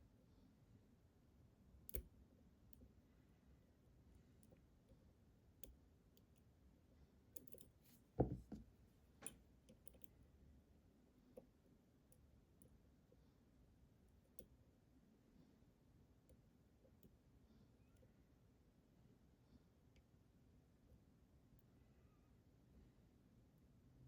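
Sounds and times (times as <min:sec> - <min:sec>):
knock: 0:08.2 - 0:08.6.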